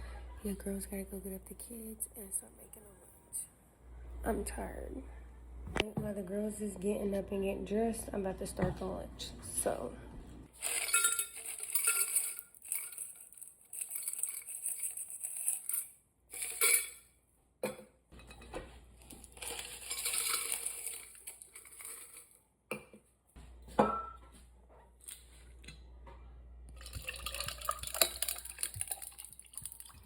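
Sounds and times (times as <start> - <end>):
dishes and cutlery clattering: 10.7 - 13.2, 16.4 - 23.0.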